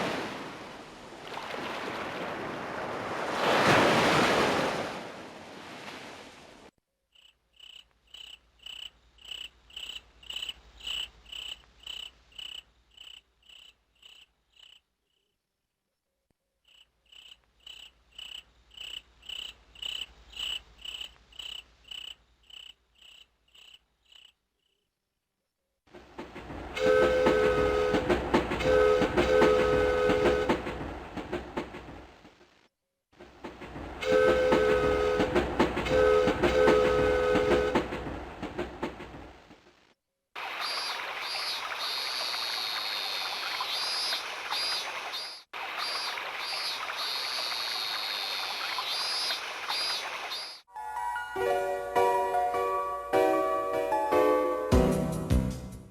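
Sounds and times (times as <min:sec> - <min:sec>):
synthesized cricket chirping: 0:07.1 - 0:15.4, 0:16.6 - 0:24.9, 0:40.4 - 0:50.6
synthesized train rumbling: 0:26.0 - 0:32.3, 0:33.2 - 0:39.6
synthesized train horn: 0:26.7 - 0:30.8, 0:34.0 - 0:38.1.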